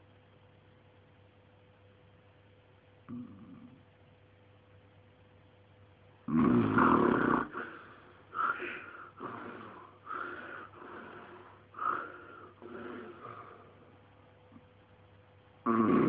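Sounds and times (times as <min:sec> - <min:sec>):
man snoring: 0:03.1 - 0:03.8, 0:06.3 - 0:13.8, 0:15.6 - 0:16.0.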